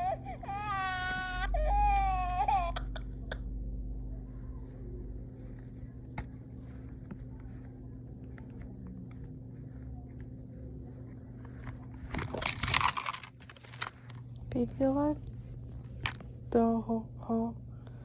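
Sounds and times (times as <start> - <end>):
recorded baby cry from toy: 0.0 - 2.7
faint handling clicks and rustles: 11.4 - 16.4.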